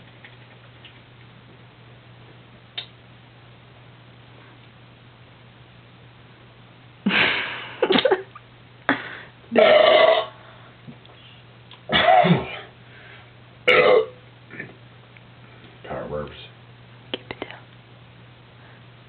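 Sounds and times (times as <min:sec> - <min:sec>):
person burping loudly: 0:09.5 - 0:10.4, 0:13.7 - 0:14.7.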